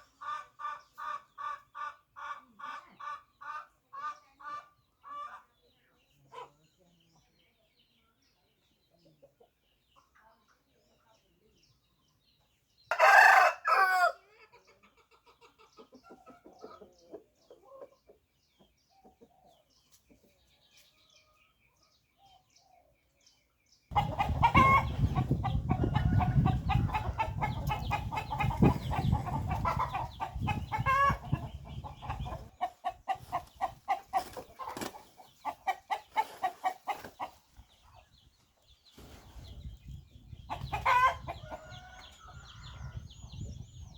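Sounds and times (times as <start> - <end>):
chickens clucking: 0.0 - 43.9
rooster crowing: 12.9 - 14.2.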